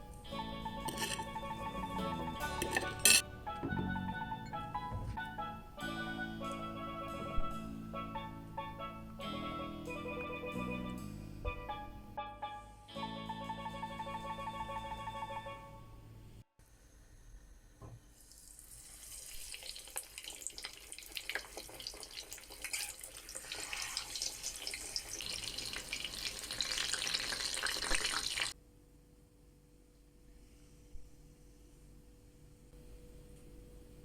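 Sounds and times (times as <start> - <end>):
background music: 0.0 - 16.4
food frying in hot oil: 18.2 - 28.5.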